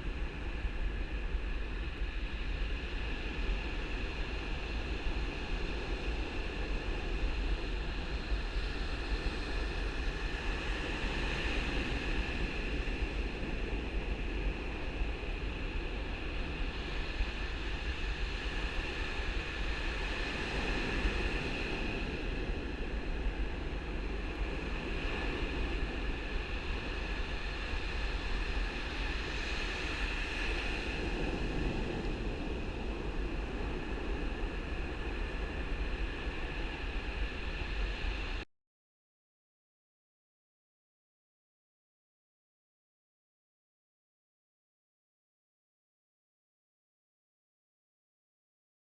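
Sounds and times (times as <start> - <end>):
wind on microphone: 0.0 - 38.4
ocean surf: 19.8 - 38.4.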